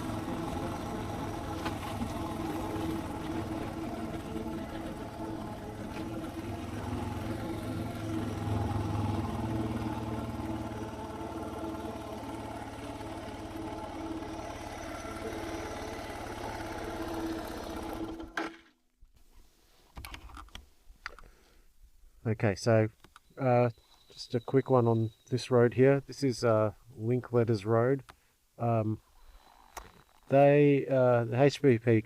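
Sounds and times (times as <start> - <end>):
motorcycle engine running: 0.0 - 18.4.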